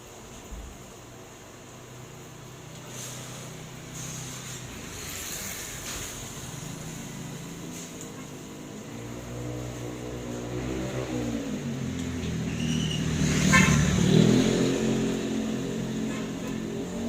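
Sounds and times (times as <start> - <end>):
steady high hiss: 0.0 - 17.0.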